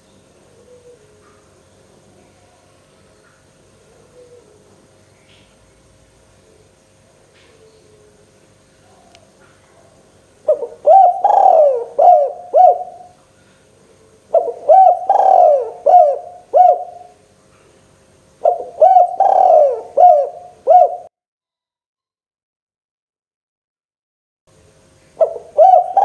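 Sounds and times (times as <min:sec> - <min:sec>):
dove cooing: 0:00.5 - 0:01.5, 0:03.8 - 0:04.9, 0:07.4 - 0:13.2, 0:13.9 - 0:17.2, 0:18.4 - 0:21.1, 0:25.2 - 0:26.0.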